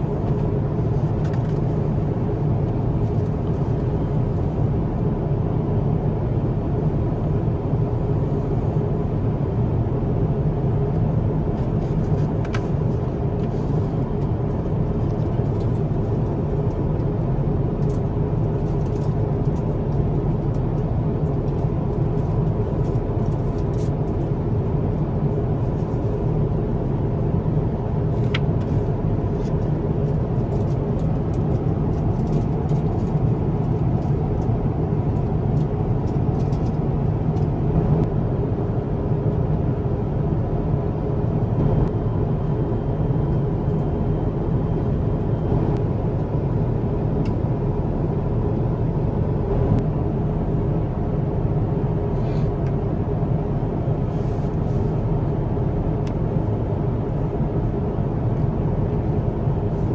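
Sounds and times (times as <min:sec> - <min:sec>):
airliner cabin drone: 0:00.0 - 0:59.9.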